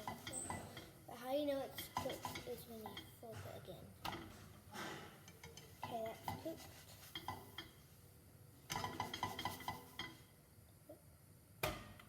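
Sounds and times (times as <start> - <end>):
kitchenware clinking: 0.0 - 1.0, 1.7 - 3.1, 4.0 - 7.8, 8.7 - 10.2.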